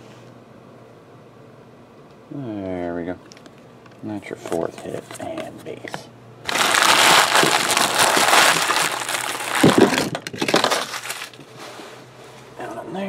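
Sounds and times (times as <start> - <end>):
foil wrappers crinkling: 4.4 - 11.6.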